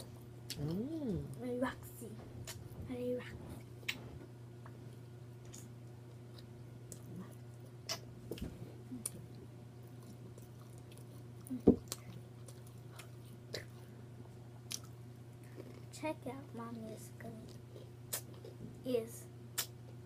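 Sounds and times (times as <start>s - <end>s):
steady low hum: 0.0s - 20.0s
close chewing: 8.9s - 13.8s
wet lip-smacks and mouth clicks: 18.1s - 18.3s.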